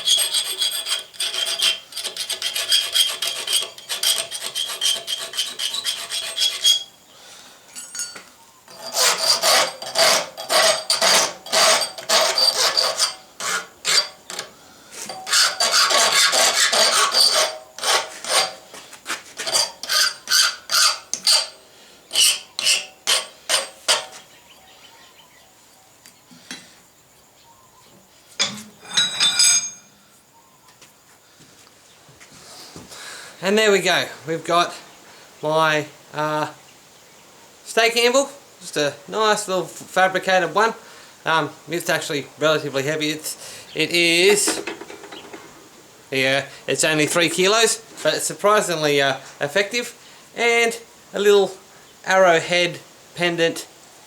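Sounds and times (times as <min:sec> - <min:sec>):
hand file rasping on steel: 0:00.0 - 0:06.9, 0:08.7 - 0:24.2.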